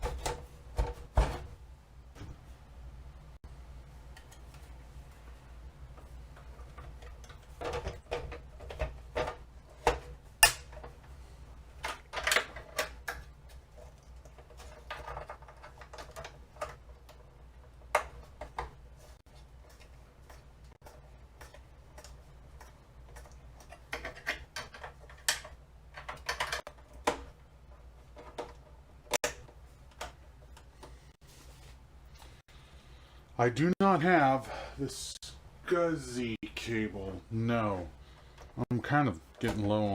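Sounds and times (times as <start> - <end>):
low steady hum: 0.0 - 39.9
hardware clicking and knocking: 6.3 - 11.1, 11.8 - 18.8, 19.7 - 31.0.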